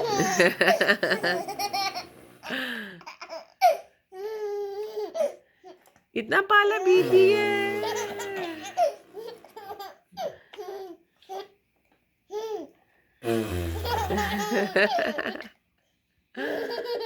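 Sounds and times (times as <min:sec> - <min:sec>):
baby laughing: 0:00.0 - 0:05.4, 0:07.0 - 0:11.6, 0:13.8 - 0:15.5, 0:16.4 - 0:17.0
adult humming funny noise: 0:06.9 - 0:09.3, 0:13.2 - 0:14.7.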